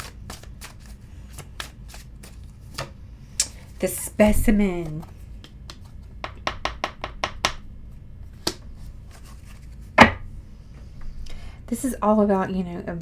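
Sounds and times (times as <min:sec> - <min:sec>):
cards being shuffled: 0:00.0 - 0:02.9, 0:04.6 - 0:06.0, 0:08.4 - 0:09.9.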